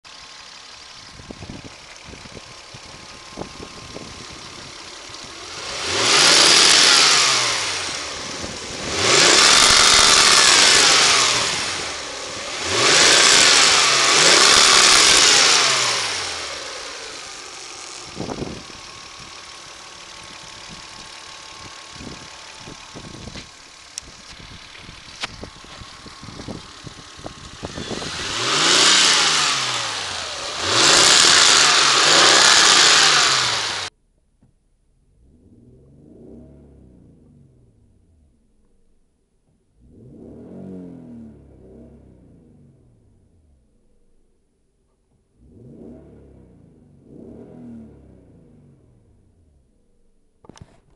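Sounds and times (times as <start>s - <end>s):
car engine idling and revving: 0.0s - 50.9s.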